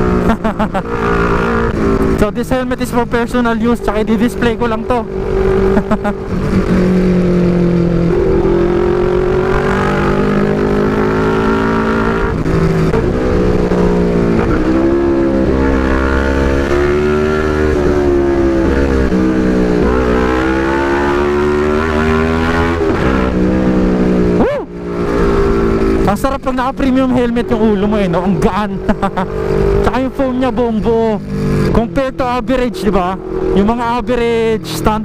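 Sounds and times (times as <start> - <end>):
motorcycle engine running: 0.0 - 35.0.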